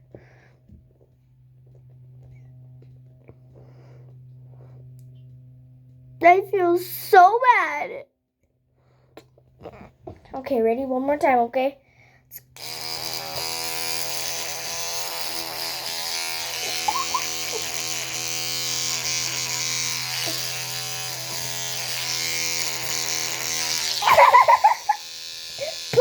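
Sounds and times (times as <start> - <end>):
electric toothbrush buzzing: 12.3 - 26.0.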